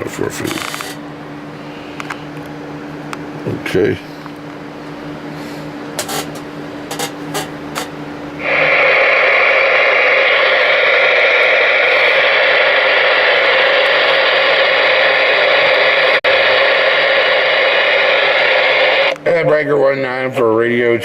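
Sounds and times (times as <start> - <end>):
radio receiver static: 6.9 - 19.3
low hum: 8.3 - 19.2.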